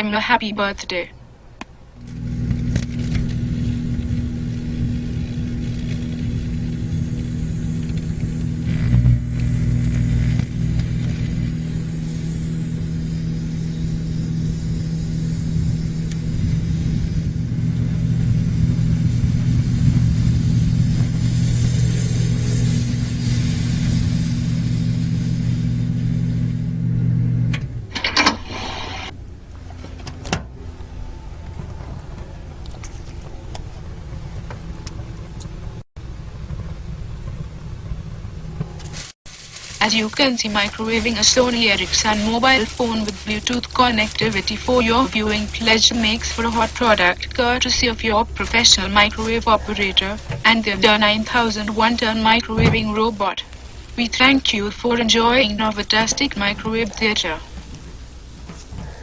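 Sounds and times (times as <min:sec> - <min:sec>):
microwave oven humming: 0:01.8 - 0:59.0.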